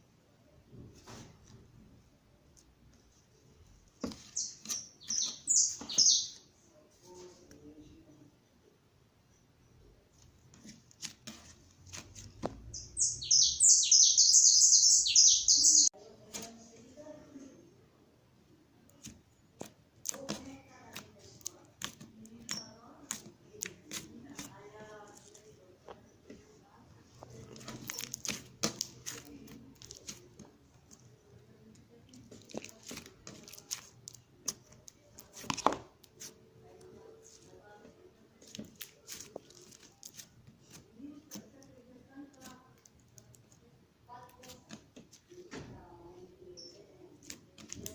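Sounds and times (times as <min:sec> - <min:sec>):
bird chirping: 0:04.0 - 0:06.4, 0:12.6 - 0:15.9
slime popping and crackling: 0:27.5 - 0:30.2.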